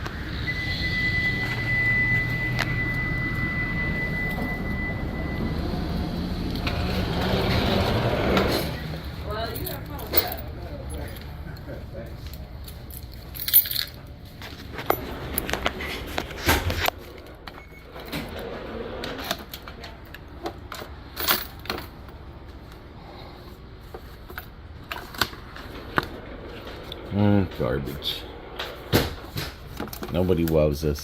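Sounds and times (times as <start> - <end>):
keys jingling: 9.4 - 16.4.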